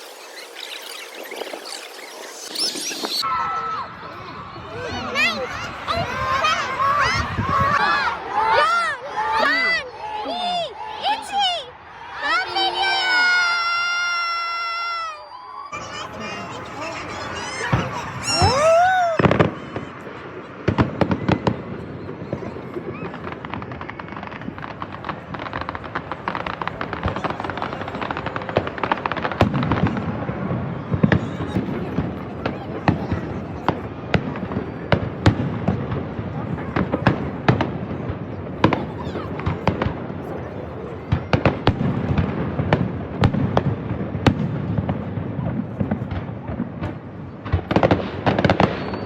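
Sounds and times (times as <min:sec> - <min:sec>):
fireworks crackling: 0:00.0 - 0:11.4, 0:12.0 - 0:49.0
loud firework bang: 0:17.3 - 0:40.2, 0:41.1 - 0:49.0.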